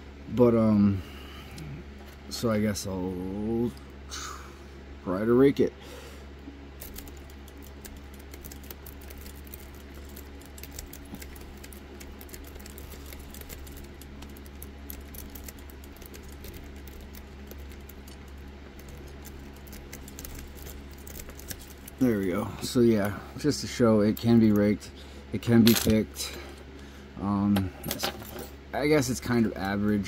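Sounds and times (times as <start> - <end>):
low hum: 0.0 - 30.0.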